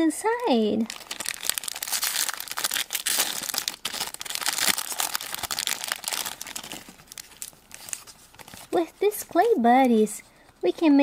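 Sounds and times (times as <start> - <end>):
wrapper tearing and crinkling: 0.8 - 8.8.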